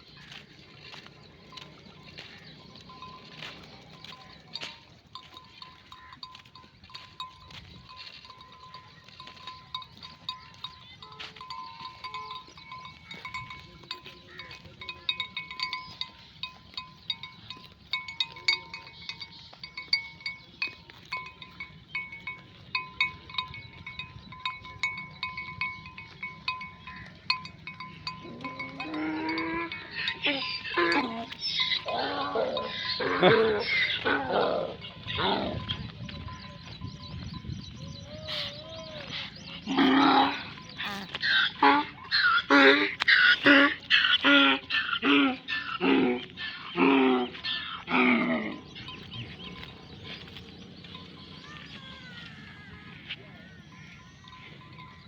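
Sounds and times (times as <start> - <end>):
sheep bells clanking: 0.0 - 55.0.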